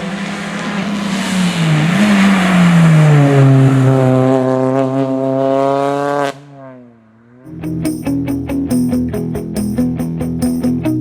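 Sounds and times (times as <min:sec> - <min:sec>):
rally car engine revving: 0:00.0 - 0:07.6.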